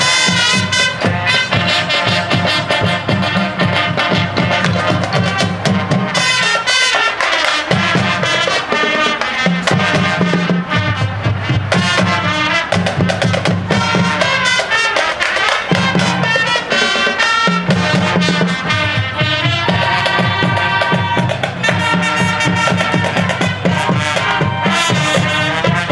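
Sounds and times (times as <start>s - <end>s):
marching band playing: 0.0s - 25.9s
sharp drum hits: 15.6s - 25.9s.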